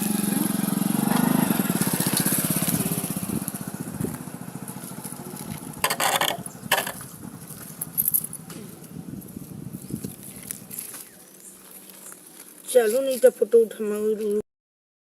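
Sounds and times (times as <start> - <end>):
small engine running: 0.0 - 8.8.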